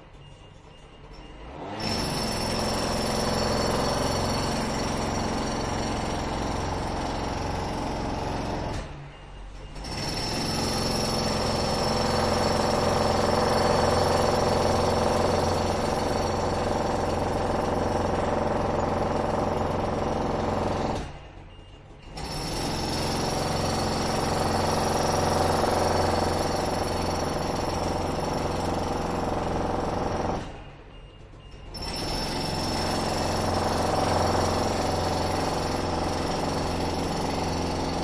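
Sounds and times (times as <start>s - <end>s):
construction machinery pounding: 0.0s - 38.0s.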